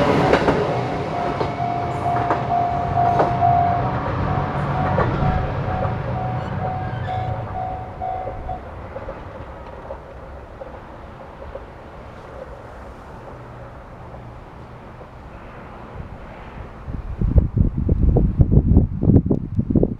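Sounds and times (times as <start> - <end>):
level crossing warning bell: 0.0 - 9.1
steady low rumble: 0.0 - 10.5.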